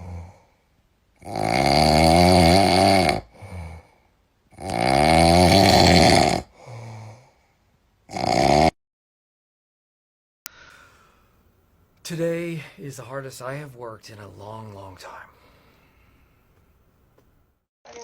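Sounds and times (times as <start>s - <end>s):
loud snoring: 1.2s - 3.9s, 4.5s - 7.2s, 8.1s - 8.8s
weak breath: 10.5s - 11.4s, 15.4s - 16.6s.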